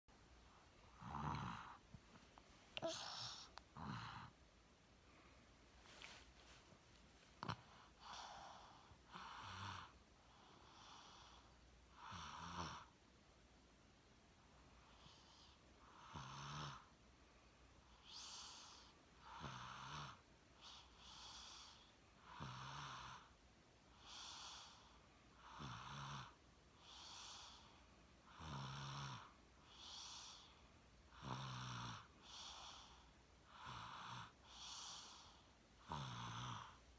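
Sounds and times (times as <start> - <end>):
person snoring: 1.0 - 1.8, 2.8 - 4.3, 33.5 - 36.8.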